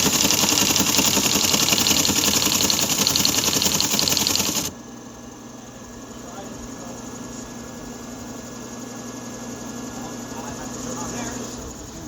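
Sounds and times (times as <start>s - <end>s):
teletype printer clattering: 0.0s - 4.7s.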